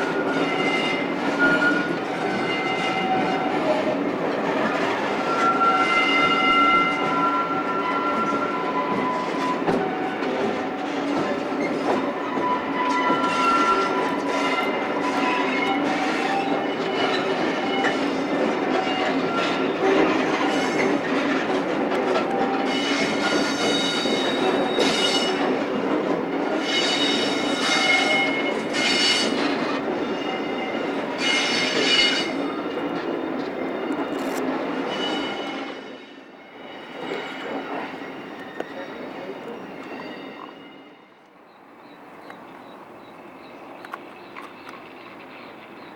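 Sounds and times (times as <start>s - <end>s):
diesel locomotive engine whine: 0.0s - 45.9s
train wheels squealing: 0.0s - 45.9s
train wheels clicking on rail joints: 41.2s - 45.9s.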